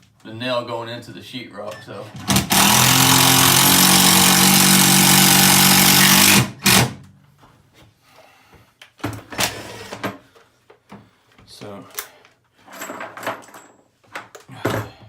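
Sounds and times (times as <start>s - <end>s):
power drill driving a screw: 2.2s - 7.0s.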